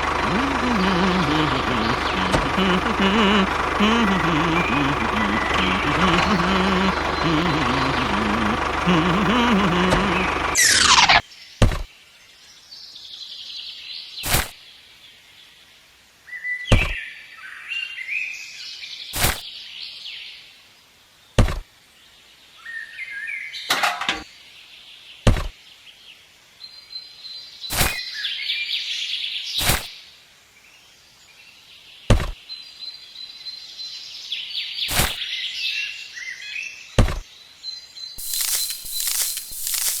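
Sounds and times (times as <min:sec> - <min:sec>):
steady running noise: 0:00.0 - 0:10.9, 0:38.2 - 0:40.0
birds chirping: 0:00.0 - 0:11.2, 0:38.2 - 0:40.0.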